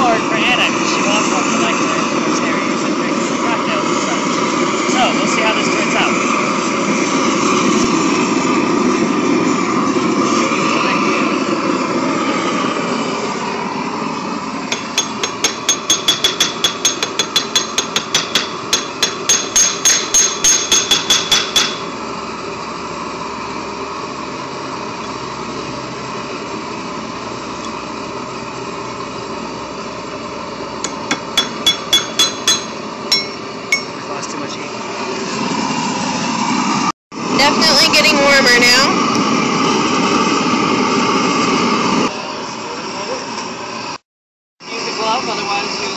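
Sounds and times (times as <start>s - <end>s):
blowtorch rushing: 0.0s - 19.3s, 21.6s - 44.0s
hammer striking anvil: 14.7s - 21.9s, 30.8s - 34.0s.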